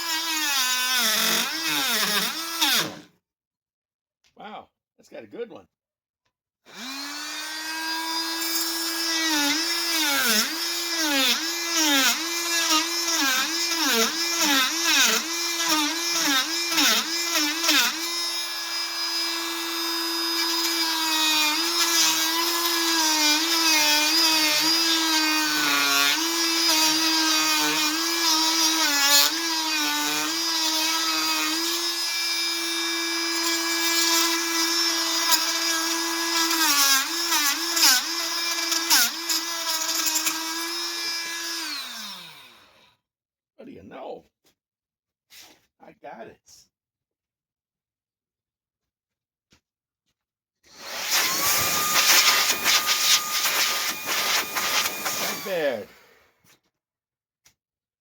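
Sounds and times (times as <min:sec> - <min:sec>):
oscillating multi-tool whining: 0:00.0 - 0:03.0, 0:06.7 - 0:42.9, 0:50.7 - 0:56.1.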